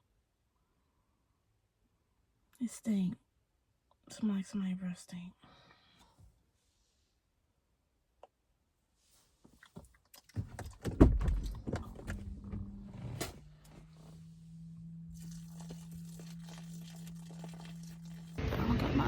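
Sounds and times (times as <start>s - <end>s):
steady low hum: 11.8s - 19.0s.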